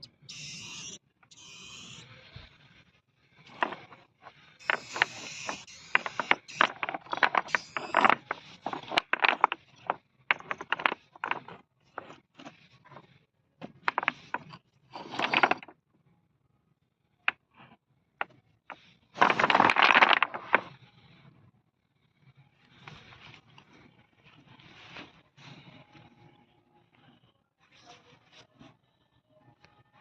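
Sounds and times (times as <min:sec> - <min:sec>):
scraping and crunching: 0:03.5 - 0:13.2, 0:19.2 - 0:20.8.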